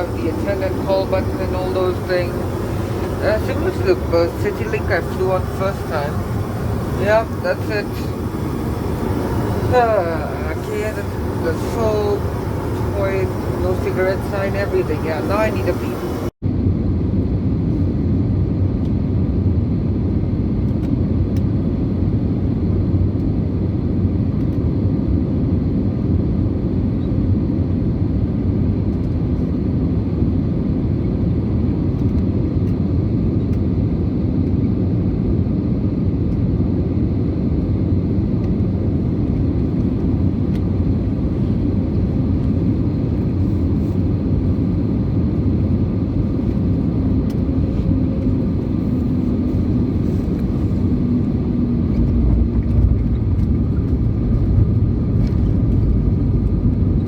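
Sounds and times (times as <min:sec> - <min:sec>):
airplane cabin rumble: 0:00.0 - 0:57.0.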